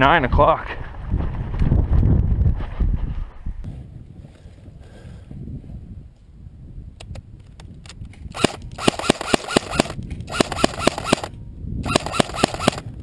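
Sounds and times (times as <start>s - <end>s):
airsoft rifle rapid shots: 8.3s - 13.0s.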